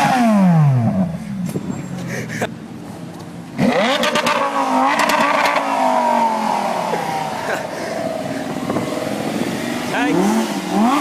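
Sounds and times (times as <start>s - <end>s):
sports car engine accelerating: 3.0s - 11.0s.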